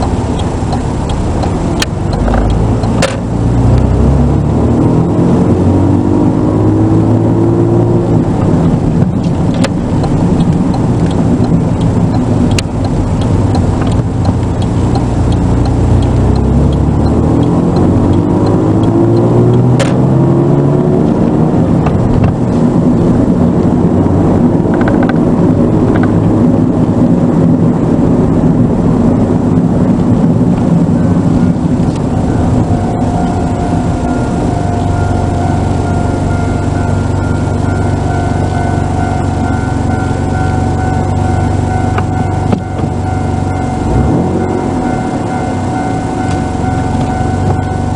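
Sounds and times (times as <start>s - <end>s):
car engine accelerating: 0.0s - 47.9s.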